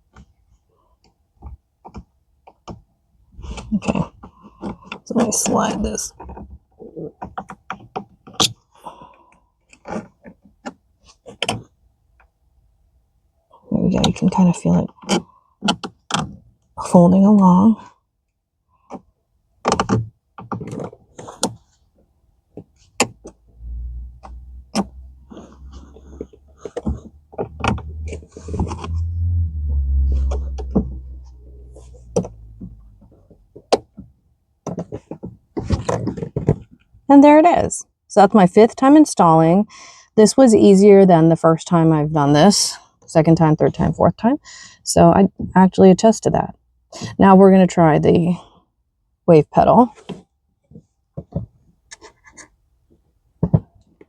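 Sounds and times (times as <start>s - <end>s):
low rumble: 23.5s - 33.2s.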